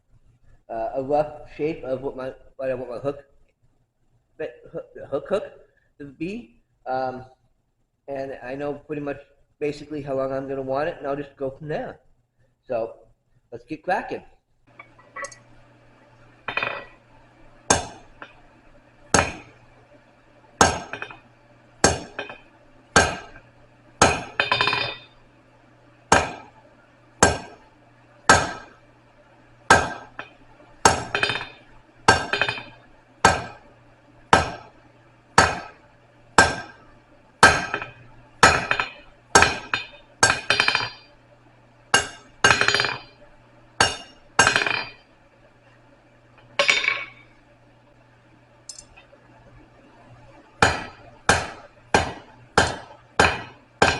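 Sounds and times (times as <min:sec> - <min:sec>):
steady low hum: 0:00.0 - 0:53.9
hammer striking rod on anvil: 0:17.7 - 0:18.4, 0:19.1 - 0:19.5, 0:20.6 - 0:21.2, 0:21.8 - 0:22.4, 0:23.0 - 0:23.4, 0:24.0 - 0:25.1, 0:26.1 - 0:26.5, 0:27.2 - 0:27.6, 0:28.3 - 0:28.7, 0:29.7 - 0:33.6, 0:34.3 - 0:34.7, 0:35.4 - 0:35.8, 0:36.4 - 0:36.8, 0:37.4 - 0:41.0, 0:41.9 - 0:43.2, 0:43.8 - 0:45.0, 0:46.6 - 0:47.2, 0:50.6 - 0:53.9.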